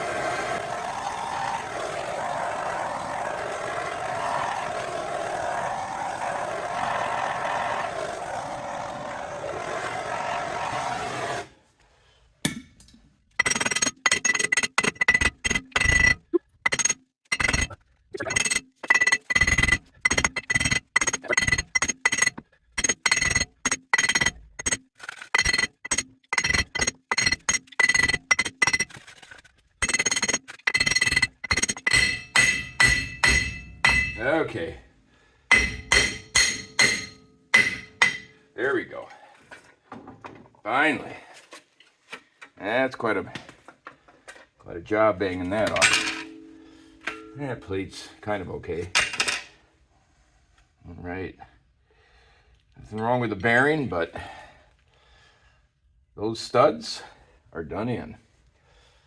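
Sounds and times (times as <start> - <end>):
hammer blows on metal: 31.7 - 34.2, 35.5 - 38.4.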